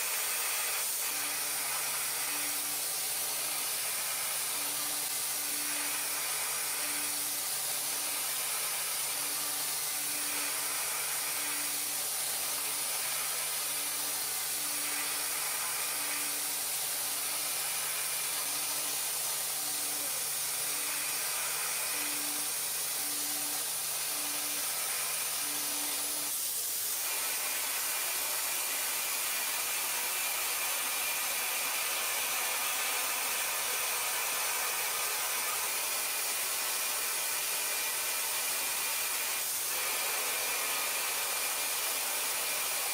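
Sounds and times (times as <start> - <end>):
machine high hiss: 0.0 - 42.9.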